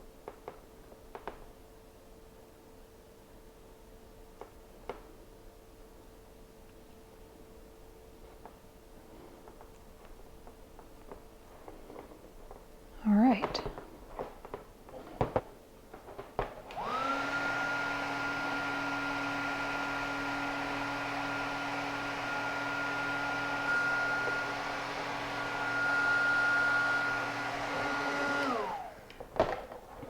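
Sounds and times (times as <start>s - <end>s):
heat gun fan whine: 15.3s - 29.8s.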